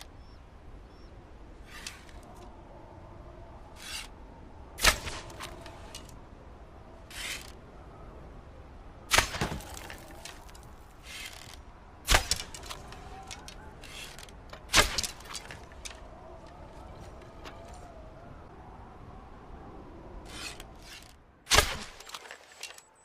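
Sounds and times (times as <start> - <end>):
scraping rustles: 9.4 - 11.6.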